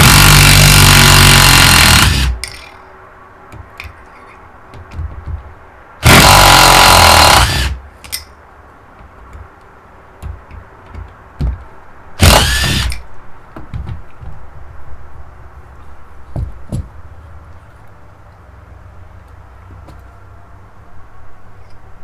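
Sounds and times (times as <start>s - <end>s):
power tool running: 0.0s - 2.5s, 6.0s - 7.8s, 12.2s - 13.0s.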